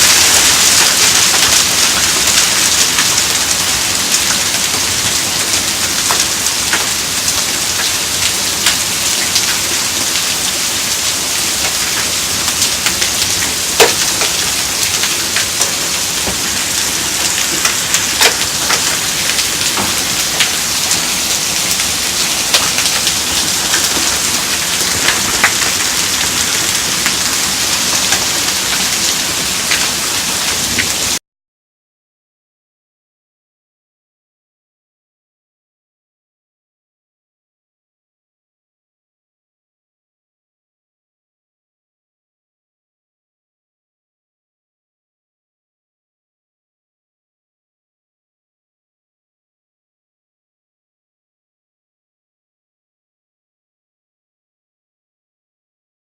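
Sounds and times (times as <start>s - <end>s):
hailstones striking hard surfaces: 0.0s - 7.9s, 11.6s - 31.0s
hail falling: 0.0s - 31.2s.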